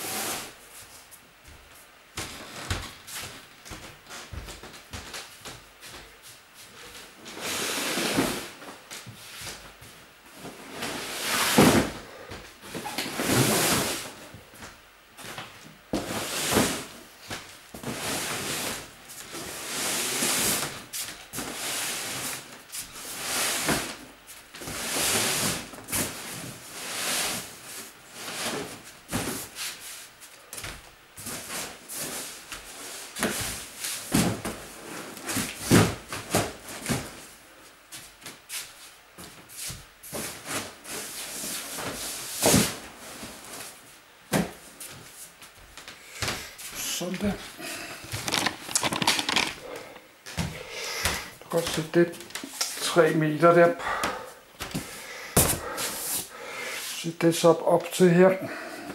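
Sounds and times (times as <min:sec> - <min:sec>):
boxes scraping and rustling: 0:06.6 - 0:09.7, 0:10.3 - 0:14.2, 0:15.2 - 0:30.3, 0:31.2 - 0:37.4, 0:38.5 - 0:45.4, 0:46.1 - 0:53.7, 0:54.6 - 0:57.4.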